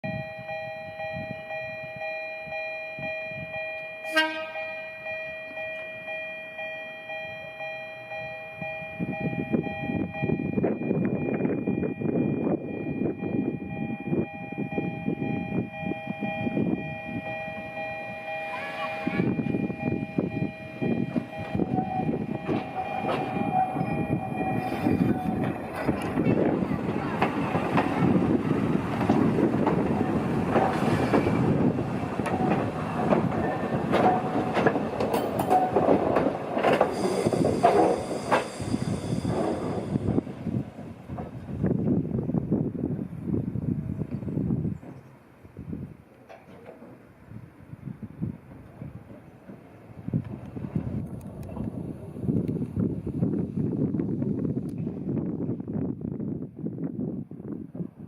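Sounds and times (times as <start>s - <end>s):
railcar rumbling: 0.0s - 58.0s
wheels clanking on track: 21.2s - 41.8s, 46.1s - 47.5s.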